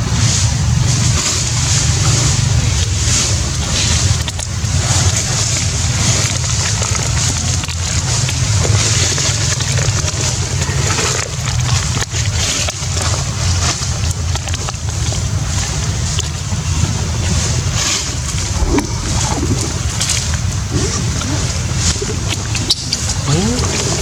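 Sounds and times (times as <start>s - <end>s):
wind buffeting microphone: 16.6s - 23.3s.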